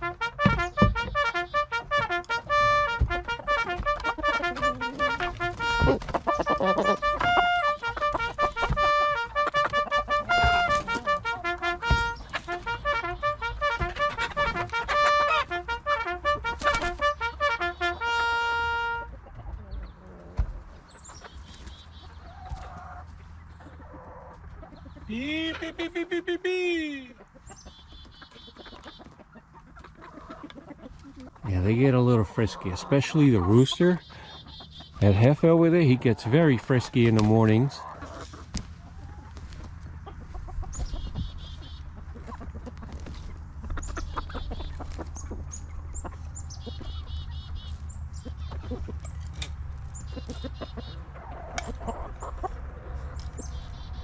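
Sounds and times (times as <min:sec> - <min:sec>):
bugle call: 0:00.0 - 0:19.1
chickens clucking: 0:00.0 - 0:54.0.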